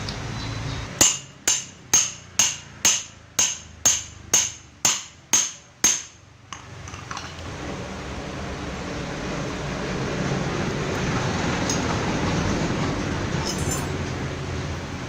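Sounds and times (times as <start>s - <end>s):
hammer striking metal: 1.0s - 6.2s.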